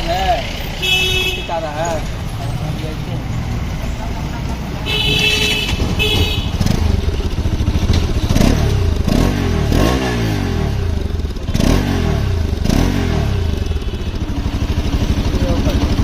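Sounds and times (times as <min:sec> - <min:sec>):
motorcycle engine idling and revving: 0:00.0 - 0:16.0
rapid clattering knock in engine: 0:05.6 - 0:08.8.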